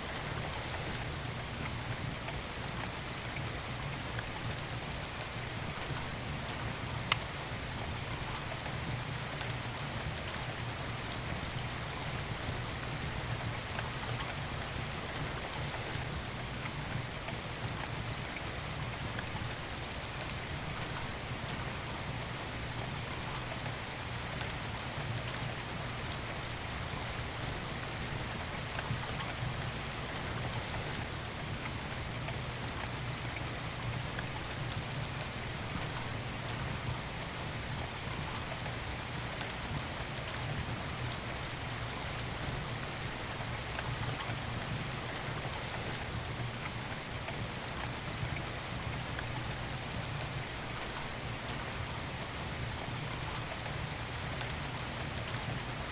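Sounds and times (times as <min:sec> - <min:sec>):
steady rain: 0:00.0 - 0:55.9
faint sharp clicks: 0:07.0 - 0:07.3.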